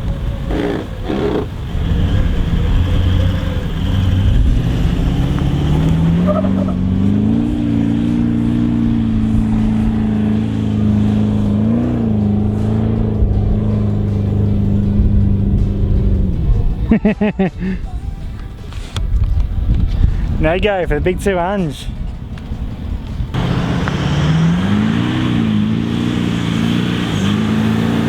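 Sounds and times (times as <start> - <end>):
engine revving hard: 0.5 - 14.9, 23.4 - 28.0.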